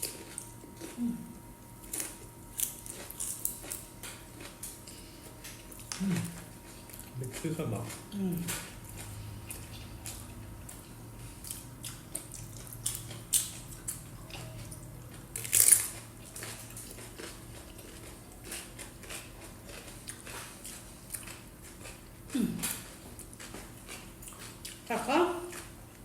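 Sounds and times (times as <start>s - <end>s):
low steady hum: 0.0s - 26.0s
crisp crunch: 15.3s - 22.0s.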